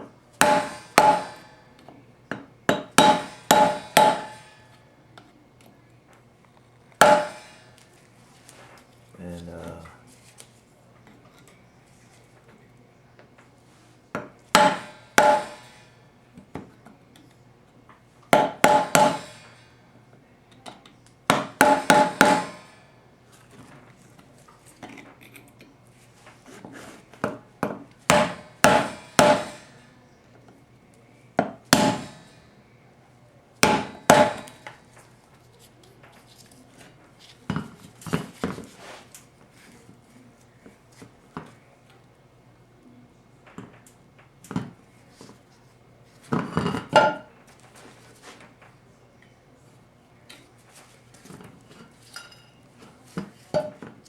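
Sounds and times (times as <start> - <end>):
hammer blows on metal: 0.4 - 1.6, 2.7 - 4.8, 7.0 - 7.8, 14.5 - 16.0, 18.4 - 19.8, 21.3 - 22.9, 28.1 - 29.9, 31.5 - 32.6, 33.6 - 34.7.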